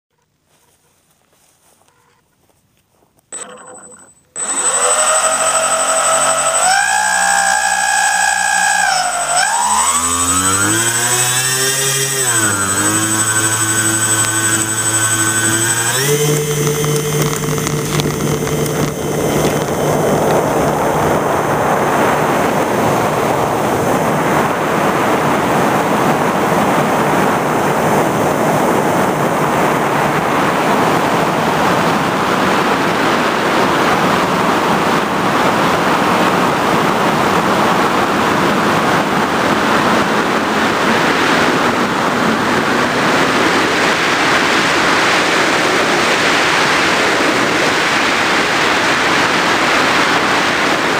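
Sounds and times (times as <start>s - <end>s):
motor hum: 3.4s - 25.0s
wind and propeller rush: 4.4s - 50.9s.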